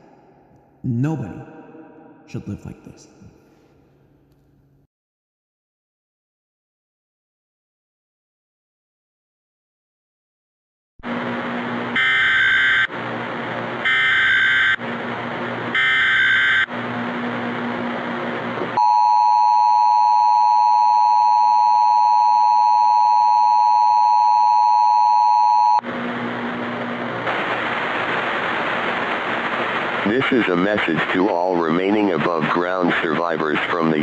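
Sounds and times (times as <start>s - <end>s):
two-tone attention signal: 18.8s - 25.8s
static hiss: 26.2s - 34.0s.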